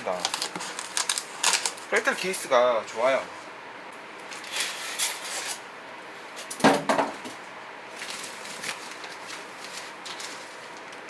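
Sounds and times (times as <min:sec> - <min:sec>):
packaging rustling: 0:00.0 - 0:02.2, 0:07.9 - 0:11.0.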